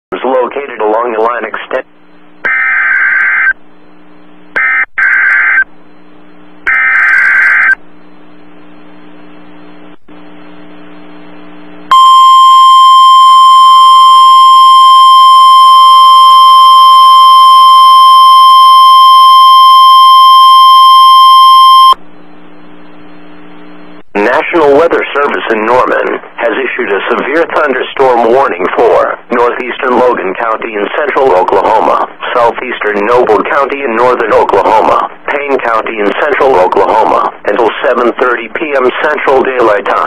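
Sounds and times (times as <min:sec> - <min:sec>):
low radio hum: 0:00.1 - 0:40.0
steady warning alarm tone: 0:11.9 - 0:22.0.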